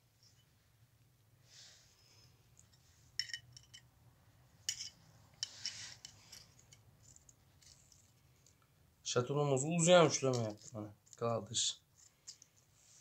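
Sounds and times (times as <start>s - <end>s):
engine parts scraping: 4.7s - 8.2s.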